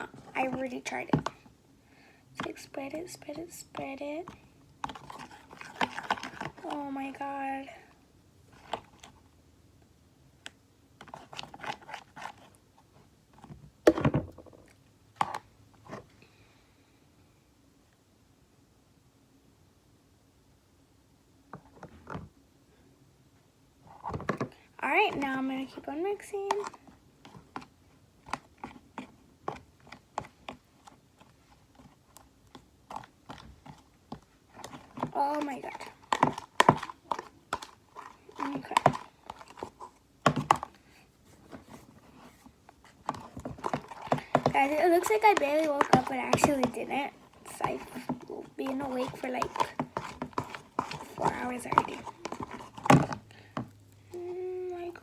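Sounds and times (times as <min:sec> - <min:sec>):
slime mixing scrapes and clicks: 0:02.4 - 0:07.2, 0:10.4 - 0:12.6, 0:24.9 - 0:54.2.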